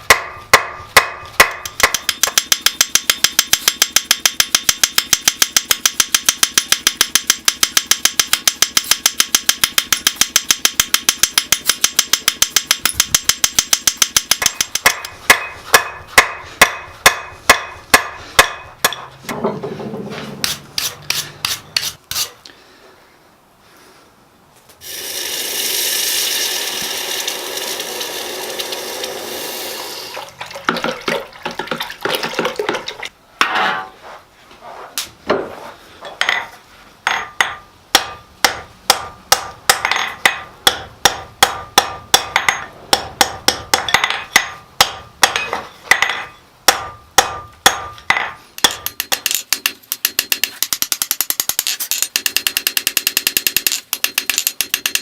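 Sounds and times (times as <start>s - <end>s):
hammer striking steel on anvil: 0.0s - 19.6s, 37.1s - 55.0s.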